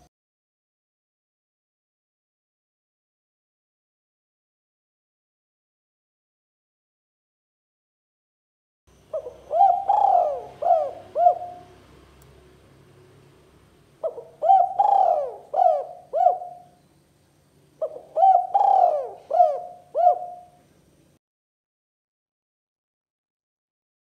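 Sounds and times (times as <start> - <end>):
dove cooing: 9.1 - 11.9, 14.0 - 16.8, 17.8 - 20.7.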